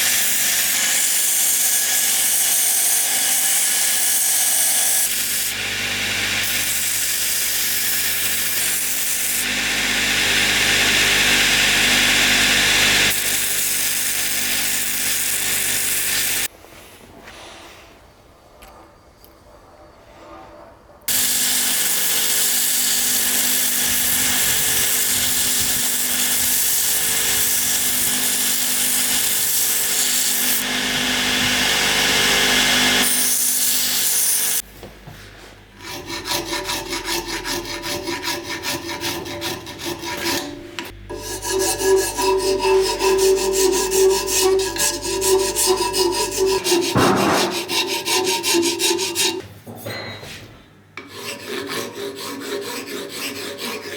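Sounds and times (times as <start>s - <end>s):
sanding wood: 0.0s - 5.6s, 35.8s - 49.4s, 51.1s - 53.9s
rasp scraping wood: 35.8s - 49.4s, 51.0s - 53.9s.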